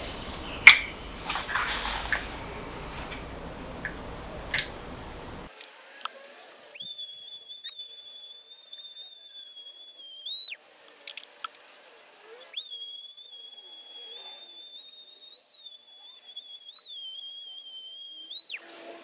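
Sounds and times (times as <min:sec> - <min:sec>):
sharp click: 0:00.0 - 0:05.1
rustling hiss: 0:00.0 - 0:05.5.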